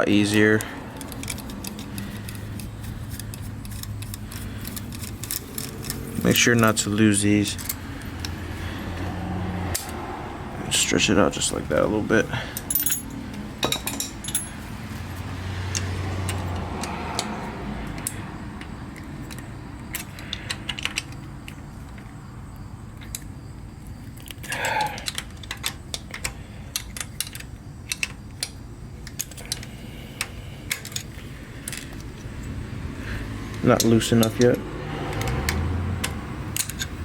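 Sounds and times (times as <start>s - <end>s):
metal tools clicking and clinking: 0.1s - 8.4s, 12.5s - 14.8s, 24.2s - 32.5s, 36.0s - 37.0s.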